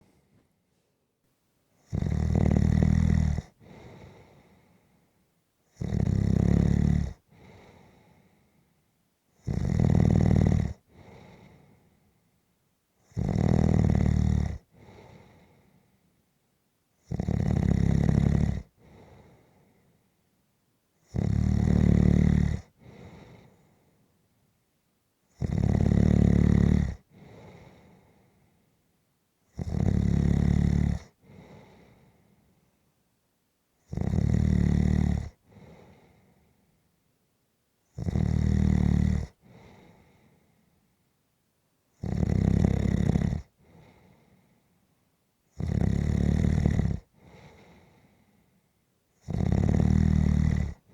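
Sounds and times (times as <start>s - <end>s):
person snoring: 1.8s - 4.1s, 5.8s - 7.2s, 9.4s - 11.3s, 13.2s - 14.6s, 17.1s - 18.7s, 21.1s - 22.7s, 25.4s - 27.0s, 29.6s - 31.7s, 33.9s - 35.4s, 38.0s - 39.4s, 42.0s - 43.5s, 45.6s - 47.7s, 49.2s - 50.8s.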